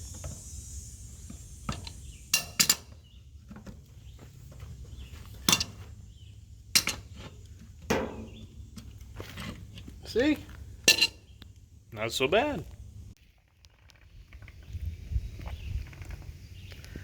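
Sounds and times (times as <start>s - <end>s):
wrench clanking on wheel nuts: 5.4s - 5.8s, 6.7s - 9.6s, 10.8s - 11.2s.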